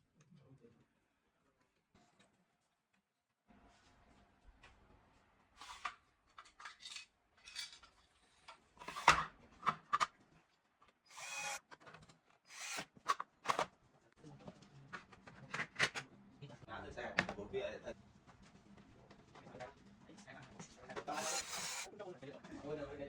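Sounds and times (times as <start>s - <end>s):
computer parts scraping and clicking: 8.8s - 10.1s, 11.1s - 11.8s, 21.0s - 21.9s.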